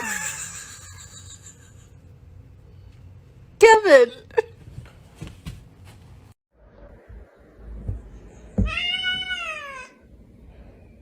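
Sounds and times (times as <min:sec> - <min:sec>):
cat meowing: 0:08.6 - 0:10.0.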